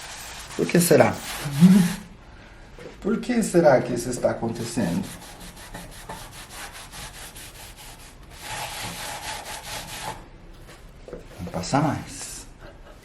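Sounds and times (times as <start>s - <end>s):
cloth scrubbing metal surface: 0.0s - 2.1s, 4.6s - 10.2s.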